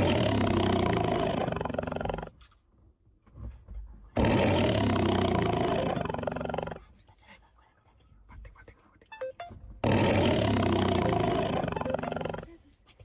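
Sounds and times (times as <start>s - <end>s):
tiger roaring: 0.0s - 2.3s, 4.2s - 6.8s, 9.8s - 12.5s.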